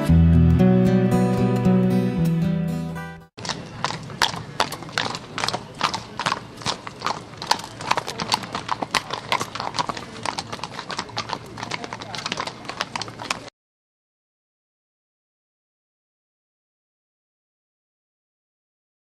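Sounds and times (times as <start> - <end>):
horse hooves clip-clopping: 3.4 - 13.5.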